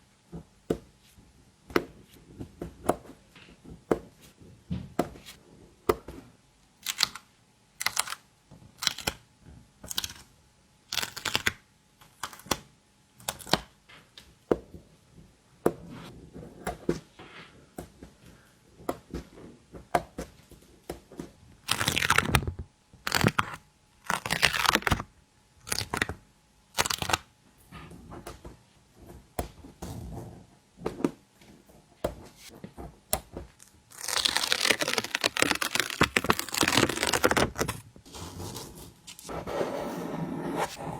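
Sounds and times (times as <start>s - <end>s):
stickers peeling: 21.6s - 25.0s, 33.6s - 37.8s
sticker taps and crinkles: 34.3s - 37.8s.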